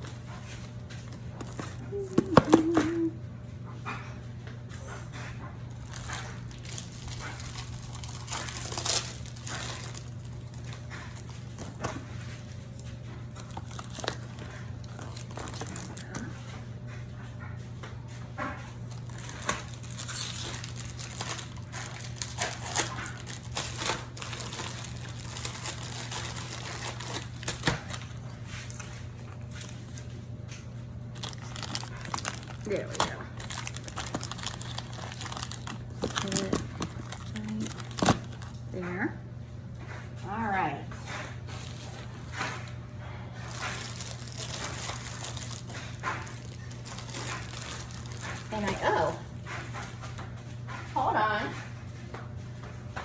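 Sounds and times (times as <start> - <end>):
plastic wrappers crinkling: 0.0 - 3.2, 5.7 - 16.5, 18.8 - 38.7, 41.5 - 42.8, 43.4 - 49.9
steady low hum: 0.0 - 53.0.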